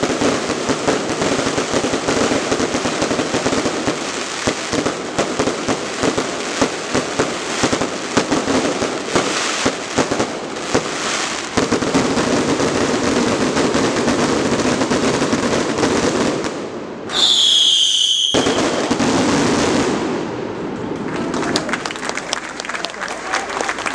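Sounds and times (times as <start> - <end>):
fireworks bangs and crackling: 0.0 - 22.2
loud high firework whistle: 17.0 - 19.2.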